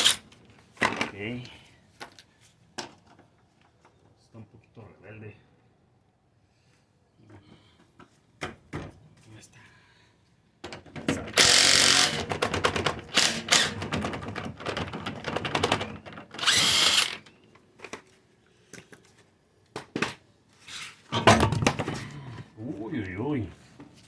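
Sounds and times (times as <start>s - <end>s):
power tool bursts: 0.0s - 0.2s, 11.4s - 12.3s, 13.1s - 13.8s, 16.4s - 17.2s
ratchet clicking: 16.4s - 17.2s.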